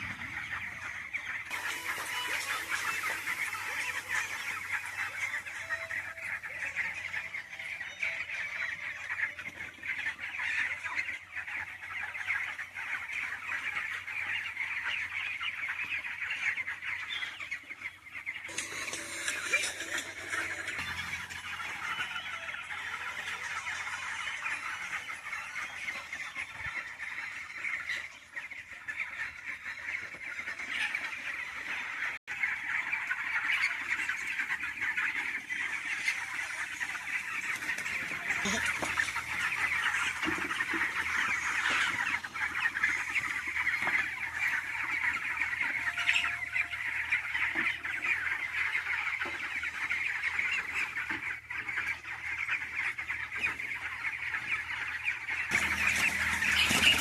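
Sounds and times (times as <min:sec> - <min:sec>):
chickens chirping and clucking: 0:00.0 - 0:57.0
low machine hum: 0:55.5 - 0:57.0.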